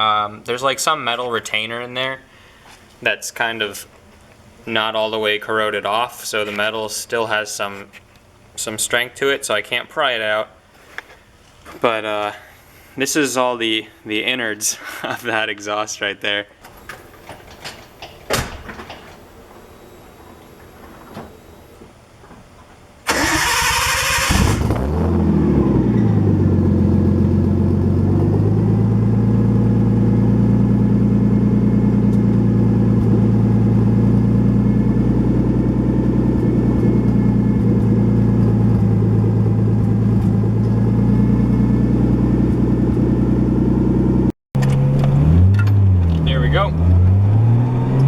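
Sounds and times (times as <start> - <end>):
car engine starting and idling: 23.0 - 48.0.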